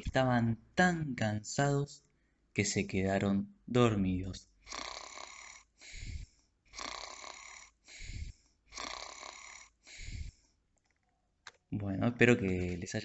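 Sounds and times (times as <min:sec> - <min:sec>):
person snoring: 0:04.6 - 0:10.5.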